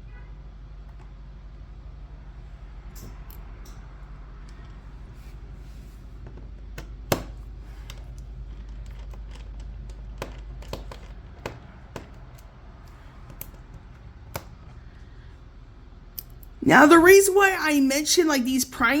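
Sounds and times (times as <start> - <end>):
low steady hum: 0.0 - 19.0
screwdriver clicks and taps: 6.3 - 8.2, 8.8 - 14.8.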